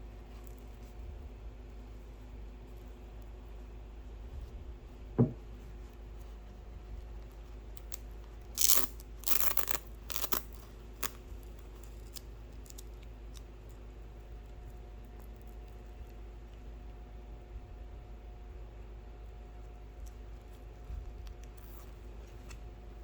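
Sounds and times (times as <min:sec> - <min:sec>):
low steady hum: 0:00.0 - 0:23.0
low thump: 0:05.2 - 0:05.4
rustling and scraping: 0:20.4 - 0:22.7.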